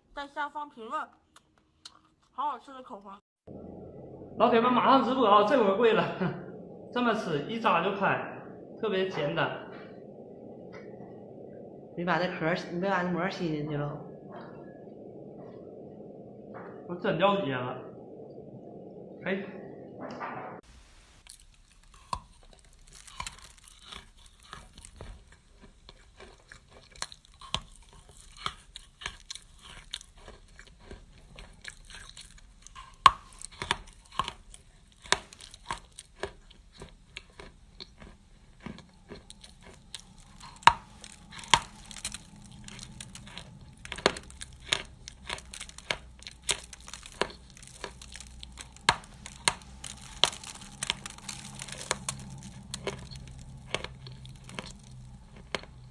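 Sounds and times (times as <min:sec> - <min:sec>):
crunchy chewing: 0:21.2 - 0:55.9
food tearing: 0:21.2 - 0:55.9.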